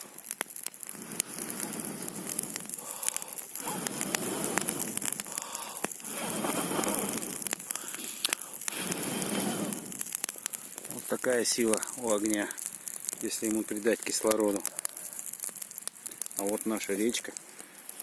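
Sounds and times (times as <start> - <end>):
person blowing on fire: 0.0 - 11.1
burning wood crackling and popping: 0.0 - 18.0.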